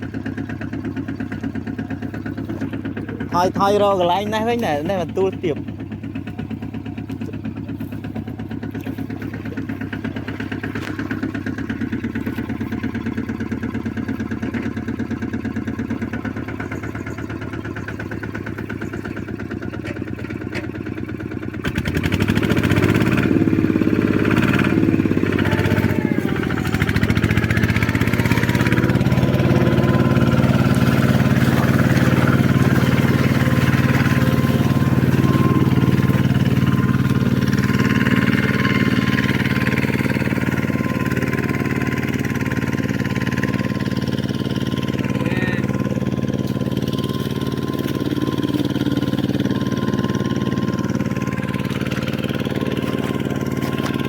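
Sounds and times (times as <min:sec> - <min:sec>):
engine revving: 0:21.6 - 0:54.0.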